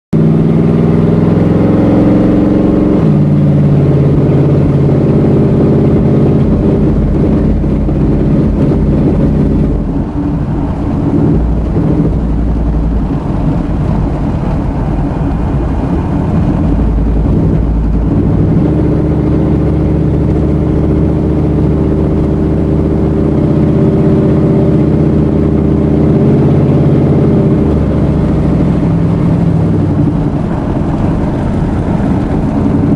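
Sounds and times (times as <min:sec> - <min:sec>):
engine running with misfire: 0:25.0 - 0:32.9.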